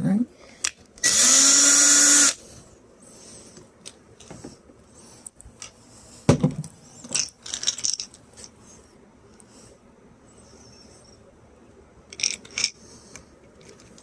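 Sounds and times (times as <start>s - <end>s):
hand tools and screws clattering: 6.5s - 8.6s, 12.1s - 12.8s.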